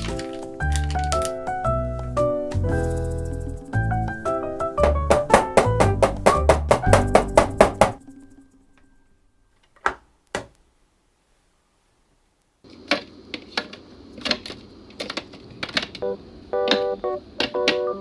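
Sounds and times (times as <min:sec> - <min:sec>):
plucked background music: 0:00.0 - 0:08.5
faint steady hum: 0:07.1 - 0:17.9.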